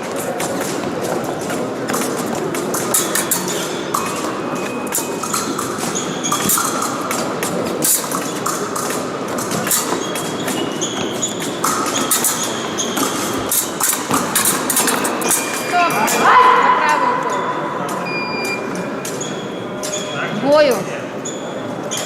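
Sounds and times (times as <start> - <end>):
clatter of fencing blades: 0.4 - 15.6.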